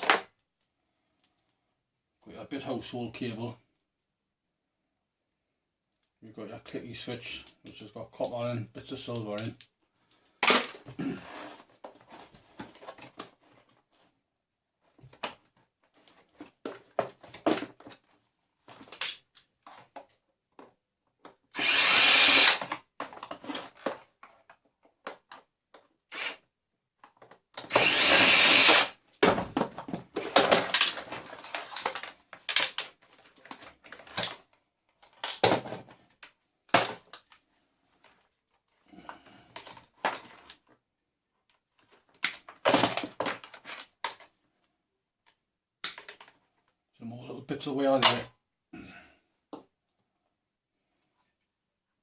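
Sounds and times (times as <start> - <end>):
power drill running: 21.6 - 22.7, 27.7 - 29.0
plastic and metal parts clicking: 30.2 - 35.5.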